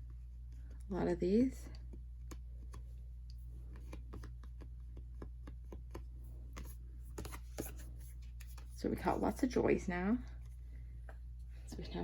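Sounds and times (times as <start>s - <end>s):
steady low hum: 0.0s - 12.0s
cards handled and set down: 3.7s - 8.8s.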